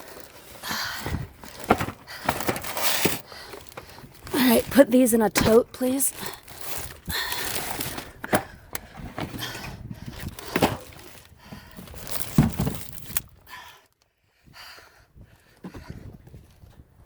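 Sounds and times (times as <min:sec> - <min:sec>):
rustling of packed items: 0:00.0 - 0:13.6.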